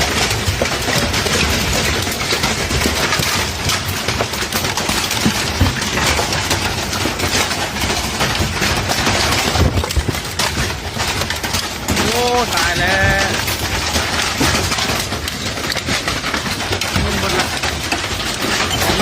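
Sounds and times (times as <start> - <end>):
hailstones clattering: 0.0 - 19.0.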